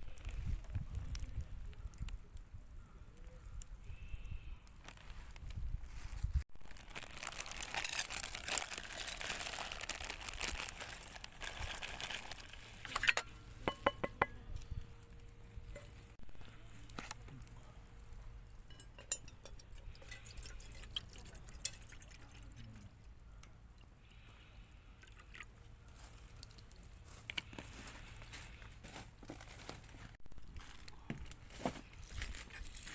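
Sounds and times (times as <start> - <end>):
light clinks: 18.6 - 20.3
water pouring: 18.6 - 23.0.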